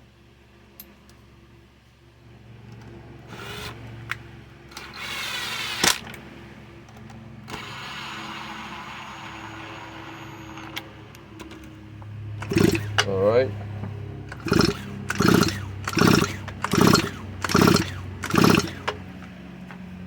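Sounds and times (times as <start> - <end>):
chainsaw recoil starter whirring: 4.7 - 6.2, 7.5 - 9.8, 12.4 - 13.2, 14.3 - 19.3.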